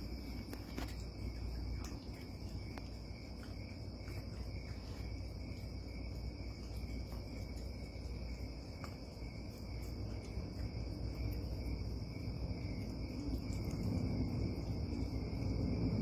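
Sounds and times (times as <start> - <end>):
crickets chirping: 0.0 - 16.0.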